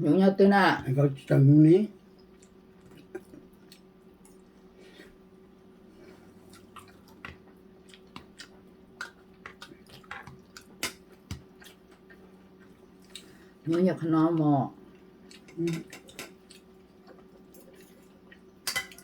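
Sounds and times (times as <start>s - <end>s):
low steady hum: 0.0s - 19.0s
chewing with wet smacks: 2.1s - 4.6s, 6.3s - 18.6s.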